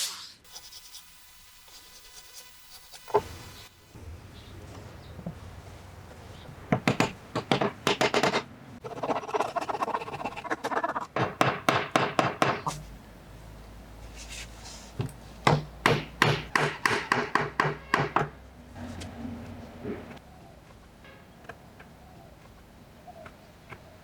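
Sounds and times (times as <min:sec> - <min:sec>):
rapid knocks on wood: 0:06.7 - 0:08.4.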